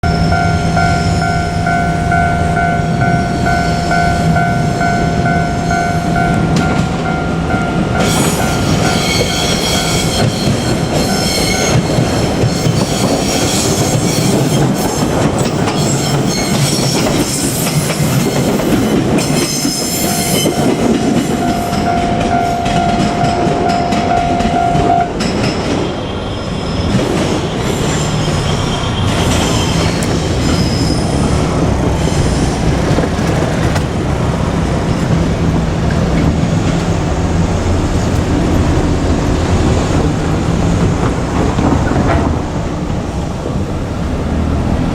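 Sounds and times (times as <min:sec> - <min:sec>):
level crossing bell ringing: 0:00.0 - 0:11.7, 0:19.8 - 0:25.3
steady high note: 0:00.0 - 0:11.8, 0:19.7 - 0:25.3
train wheels rumbling and clattering: 0:00.0 - 0:44.9.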